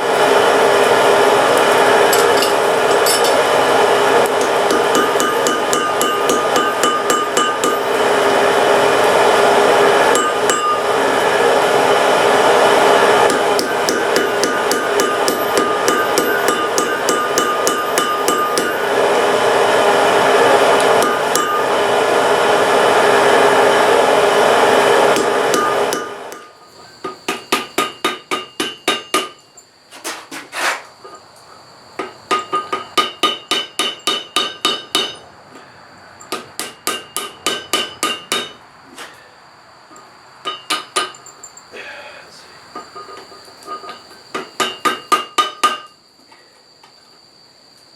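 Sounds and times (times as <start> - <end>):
anvil ringing: 2.1 - 3.5, 4.4 - 8.0, 10.1 - 10.9, 13.3 - 18.9, 20.9 - 21.7, 25.2 - 26.6, 32.3 - 35.2, 36.2 - 38.6
hammer beating metal on anvil: 4.3 - 7.9, 10.1 - 10.8, 13.2 - 18.9, 20.8 - 21.7, 25.1 - 29.4, 32.0 - 35.2, 36.3 - 38.6, 44.4 - 45.9.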